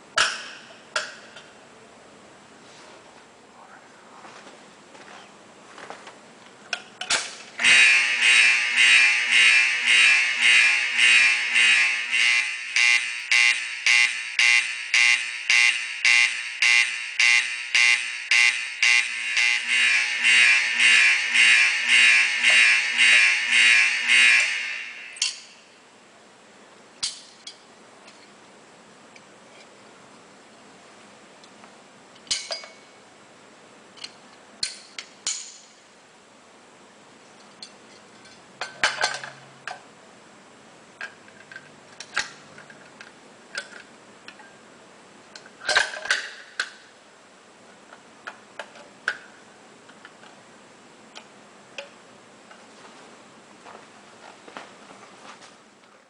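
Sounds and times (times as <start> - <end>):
pulsing buzzing fire alarm: 7.6 - 25.7.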